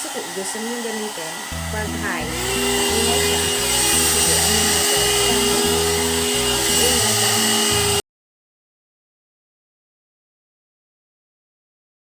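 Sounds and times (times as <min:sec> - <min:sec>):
hot air brush blowing: 0:00.0 - 0:08.0
background music with bouncing bass: 0:01.6 - 0:08.0.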